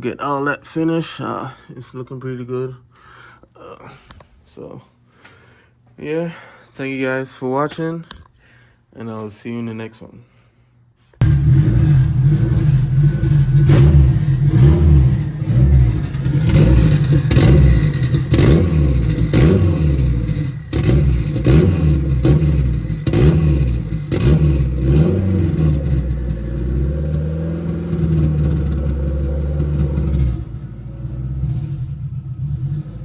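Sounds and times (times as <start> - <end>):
sharp exhaust cracks: 11.2 - 31.5
car engine revving: 11.2 - 33.0.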